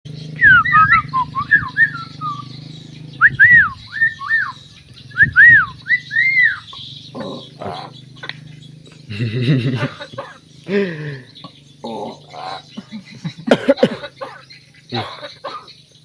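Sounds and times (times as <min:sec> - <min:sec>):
bird rasping sounds: 0:00.1 - 0:15.7
myna whistling: 0:00.4 - 0:02.6, 0:03.2 - 0:06.9.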